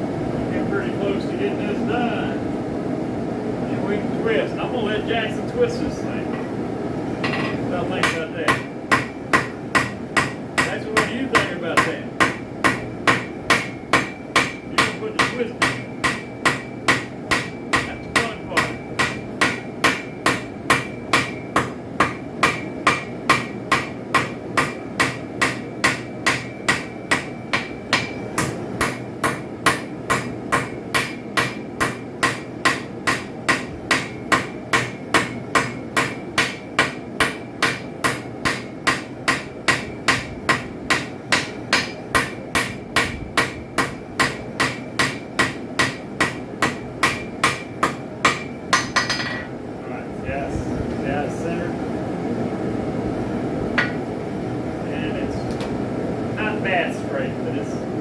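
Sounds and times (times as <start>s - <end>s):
hammer striking metal on anvil: 7.2s - 49.5s, 53.8s - 54.1s.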